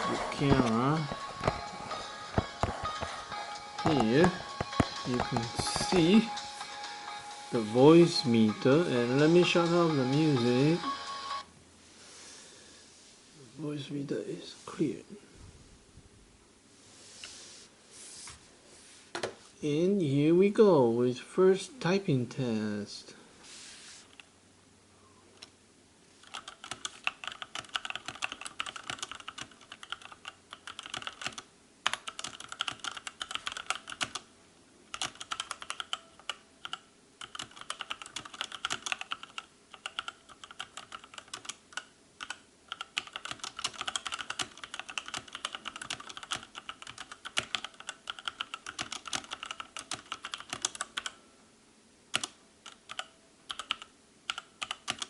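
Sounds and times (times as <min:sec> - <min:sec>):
mechanical keyboard typing: 0:00.0 - 0:01.6, 0:03.8 - 0:06.2, 0:26.2 - 0:34.2, 0:34.9 - 0:51.2, 0:52.1 - 0:55.0.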